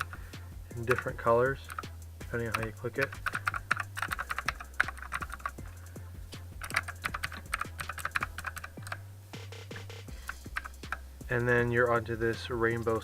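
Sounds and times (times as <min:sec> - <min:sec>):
mechanical keyboard keys clacking: 0:00.0 - 0:00.2, 0:00.8 - 0:05.8, 0:06.6 - 0:09.0, 0:10.1 - 0:11.0.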